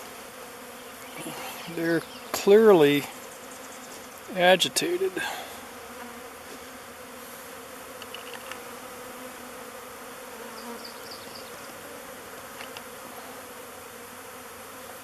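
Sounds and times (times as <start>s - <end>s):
bee swarm buzzing: 0.0s - 15.0s.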